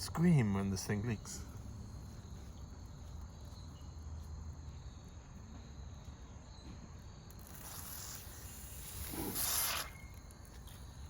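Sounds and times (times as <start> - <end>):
insects trilling: 0.0 - 11.0
broad hiss: 7.4 - 10.3.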